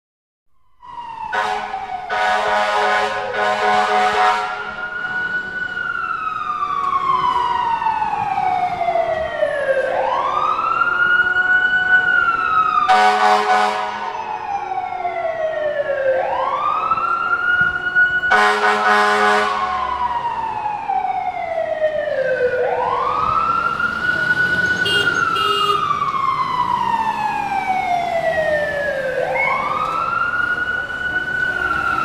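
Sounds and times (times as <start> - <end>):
fire truck siren wailing: 0.6 - 32.0
air horn blasts: 1.3 - 4.8, 12.9 - 14.1, 18.3 - 19.7, 24.8 - 25.9.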